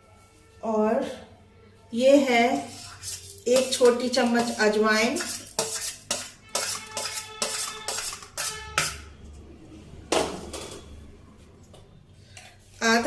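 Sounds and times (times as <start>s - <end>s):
spoon clinking against steel pot: 3.5s - 9.0s.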